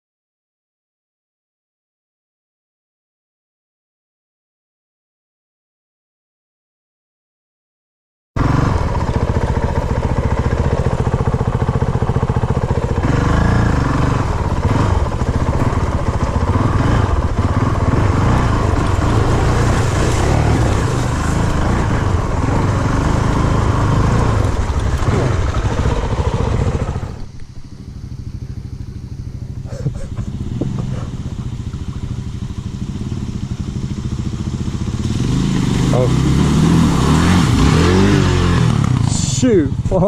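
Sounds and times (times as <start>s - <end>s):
motorcycle engine running: 8.4s - 40.0s.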